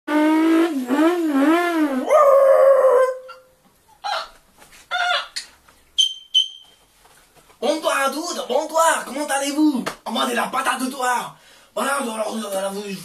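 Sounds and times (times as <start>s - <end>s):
person making howling wail: 2.0s - 3.3s.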